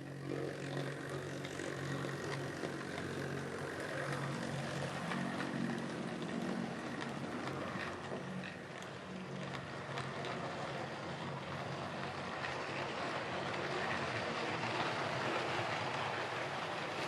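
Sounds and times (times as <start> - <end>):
model train motor hum: 0.0 - 17.0
wheels hissing on rail: 0.0 - 17.0
faint irregular clicks: 0.6 - 11.4.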